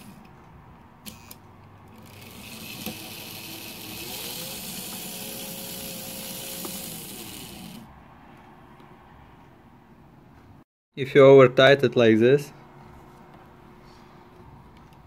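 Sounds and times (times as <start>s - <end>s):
model train motor whirring: 2.0s - 7.9s.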